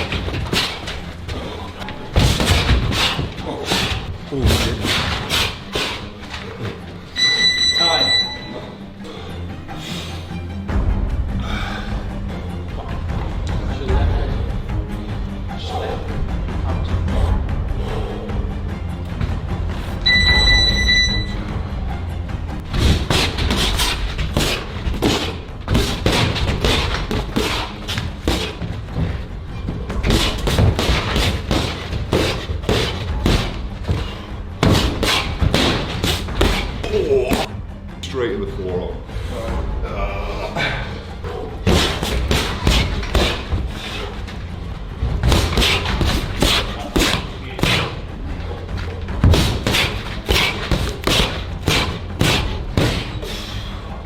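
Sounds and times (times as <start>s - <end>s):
background music with bass: 0.0s - 54.0s
boxing punches thudding: 2.1s - 6.1s, 22.7s - 28.8s, 29.9s - 37.5s, 41.6s - 43.8s, 45.1s - 48.1s, 49.2s - 53.3s
boxing glove punches thudding: 49.2s - 53.2s.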